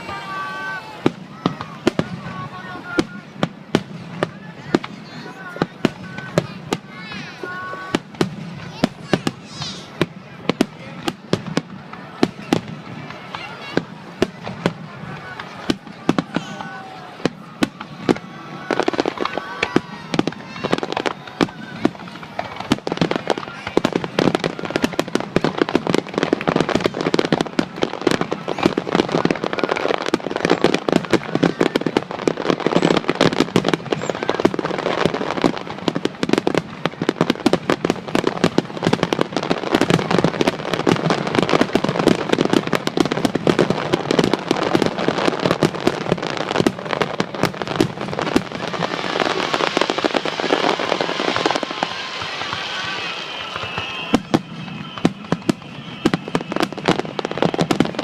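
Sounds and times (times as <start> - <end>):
fireworks bangs and pops: 0.0 - 58.0
fireworks crackling hiss: 0.0 - 58.0.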